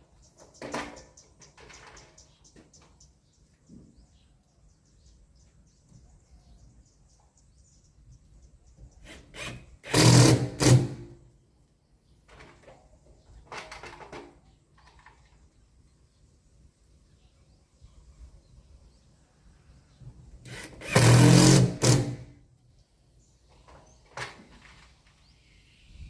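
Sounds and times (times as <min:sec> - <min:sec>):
cordless drill driving screws: 0:09.0 - 0:11.1, 0:20.4 - 0:22.3.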